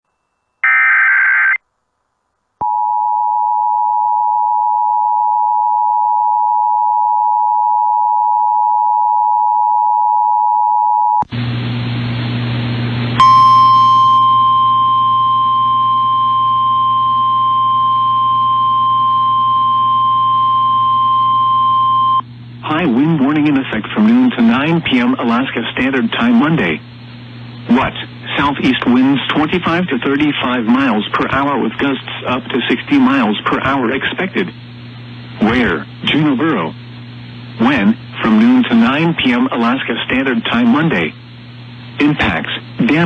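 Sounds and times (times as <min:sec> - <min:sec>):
radio static and hum: 0:00.6 - 0:01.6, 0:15.3 - 0:43.0
single-tone warning alarm: 0:13.2 - 0:22.2.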